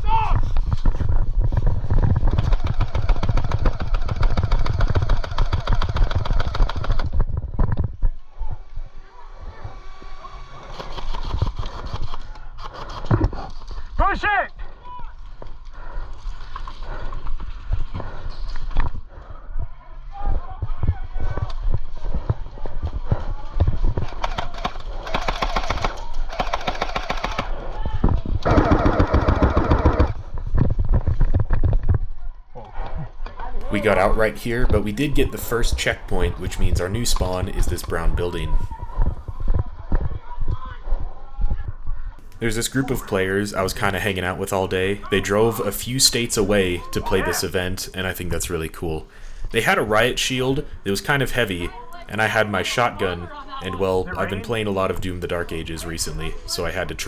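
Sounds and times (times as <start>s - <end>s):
airsoft guns firing full-auto: 24.1s - 27.7s, 28.5s - 30.1s.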